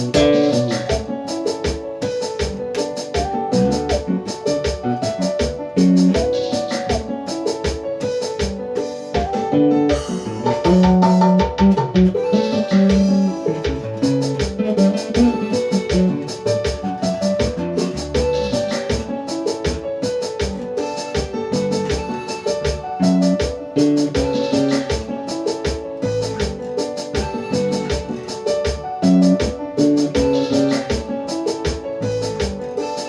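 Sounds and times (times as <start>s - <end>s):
electric bass line: 0.0s - 1.1s, 3.3s - 7.0s, 9.6s - 19.1s
keyboard chords: 0.0s - 33.0s.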